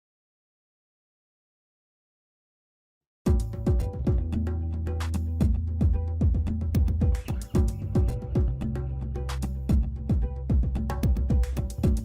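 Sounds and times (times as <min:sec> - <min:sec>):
kick drum beat: 0:03.3 - 0:04.4, 0:05.4 - 0:08.7, 0:09.7 - 0:12.0
electronic music: 0:03.3 - 0:12.0.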